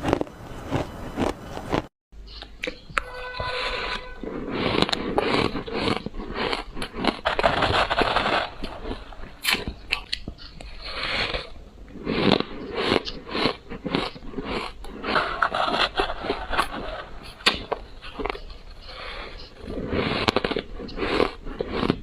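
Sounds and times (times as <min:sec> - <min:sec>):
ice being chewed: 0:00.0 - 0:02.8, 0:03.7 - 0:22.0.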